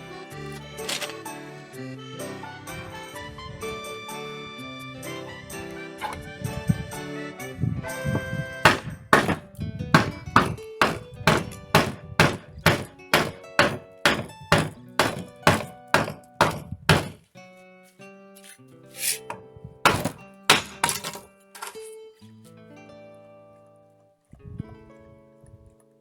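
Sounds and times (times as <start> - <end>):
hammer blows on wood: 7.9 - 17.2, 19.2 - 20.9.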